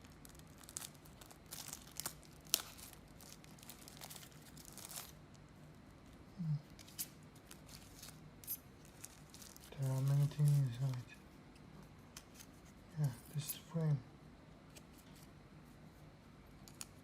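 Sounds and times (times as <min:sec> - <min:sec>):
packaging rustling and tearing: 0:00.0 - 0:05.8, 0:06.8 - 0:11.0.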